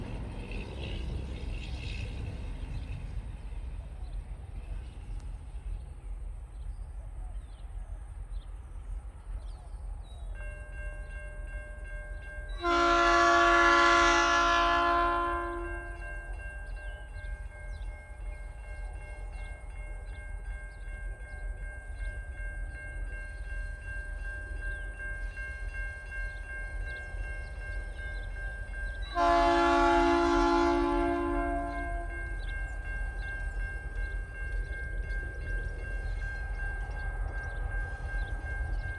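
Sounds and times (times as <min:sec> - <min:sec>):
low train rumble: 0:00.0 - 0:38.9
locomotive horn blasts: 0:12.6 - 0:16.2, 0:29.0 - 0:32.4.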